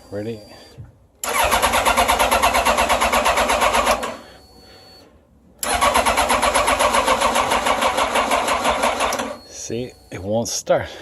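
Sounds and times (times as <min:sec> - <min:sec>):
starter motor cranking engine: 0:01.2 - 0:04.2, 0:05.6 - 0:09.4.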